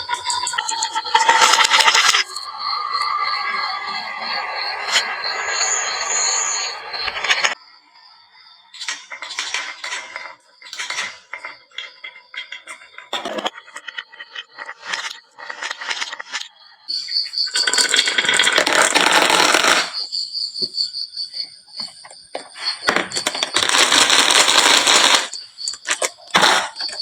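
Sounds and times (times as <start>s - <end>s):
marbles clicking on wooden run: 0.0s - 3.1s, 8.8s - 16.5s, 17.2s - 20.1s, 21.8s - 27.0s
marbles clattering down slope: 0.0s - 7.6s, 8.8s - 16.5s, 17.4s - 20.1s, 22.3s - 27.0s.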